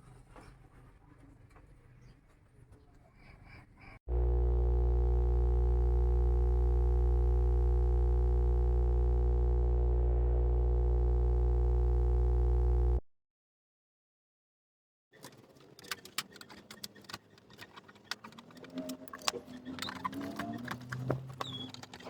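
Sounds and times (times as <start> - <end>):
low electrical buzzing hum: 4.1 - 13.0.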